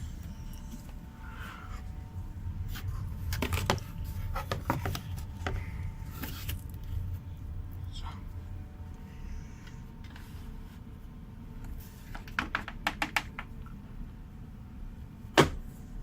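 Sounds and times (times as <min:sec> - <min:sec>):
faint whine: 0:00.0 - 0:12.1
washing machine hum: 0:00.0 - 0:16.0.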